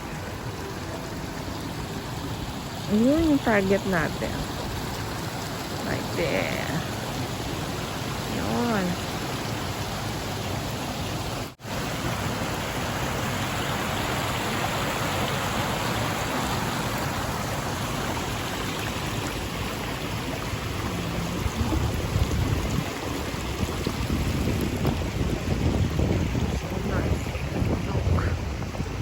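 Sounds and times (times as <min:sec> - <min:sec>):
waterfall rushing: 0:00.0 - 0:29.0
wind buffeting microphone: 0:20.4 - 0:29.0.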